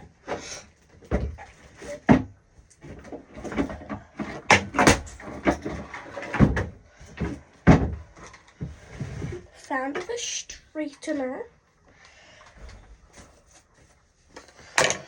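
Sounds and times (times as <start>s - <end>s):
rummaging through a drawer: 0.3s - 10.2s.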